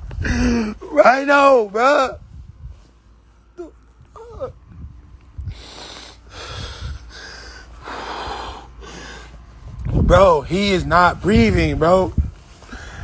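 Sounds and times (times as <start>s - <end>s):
heavy ragged breathing: 0.0s - 0.8s, 5.4s - 10.0s, 12.4s - 13.0s
man crying: 0.2s - 1.5s, 3.6s - 4.6s.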